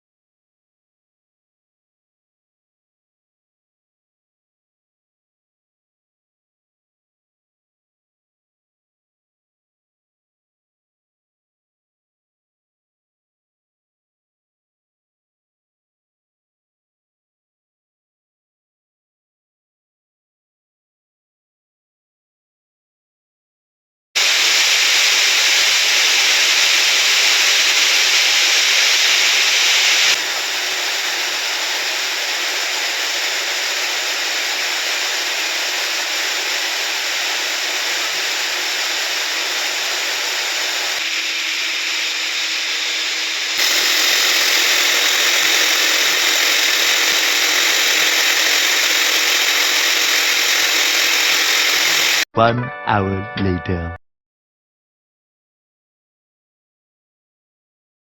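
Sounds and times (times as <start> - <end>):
loud machine noise: 24.2 - 52.3.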